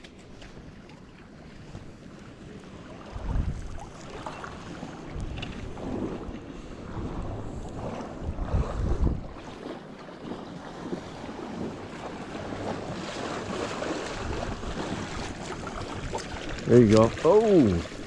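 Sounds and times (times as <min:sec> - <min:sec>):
wind buffeting microphone: 0:00.0 - 0:18.0
river water rushing: 0:11.9 - 0:18.0.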